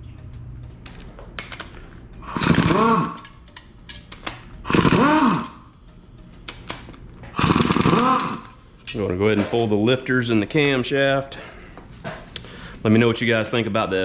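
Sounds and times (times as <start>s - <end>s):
power tool spinning up: 2.2s - 3.3s, 4.6s - 5.6s, 7.4s - 8.5s.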